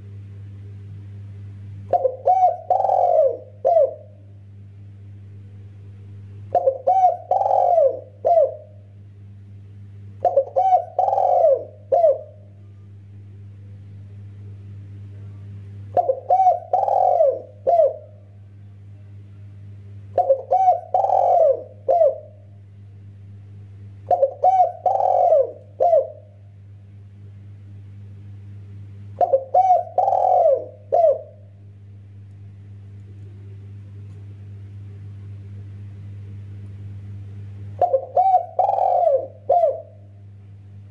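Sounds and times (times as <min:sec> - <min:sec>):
steady low hum: 0:00.0 - 0:40.9
dove cooing: 0:01.9 - 0:04.2, 0:06.5 - 0:08.8, 0:10.2 - 0:12.5, 0:15.9 - 0:18.2, 0:20.1 - 0:22.5, 0:24.1 - 0:26.3, 0:29.2 - 0:31.5, 0:37.8 - 0:40.1.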